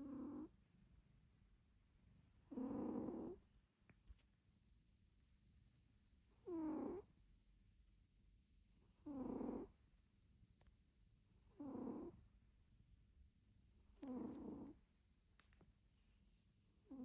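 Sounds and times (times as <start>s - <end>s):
cat snoring: 0.0s - 0.5s, 2.4s - 3.4s, 6.3s - 7.1s, 8.9s - 9.8s, 11.5s - 12.2s, 14.0s - 14.8s.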